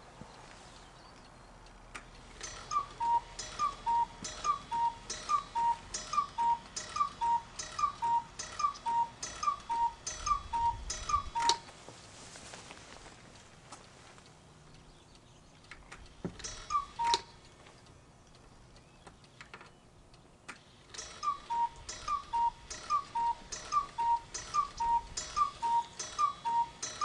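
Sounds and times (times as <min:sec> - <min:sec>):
cuckoo clock calls: 0:02.0 - 0:11.7, 0:16.1 - 0:17.9, 0:20.5 - 0:27.0.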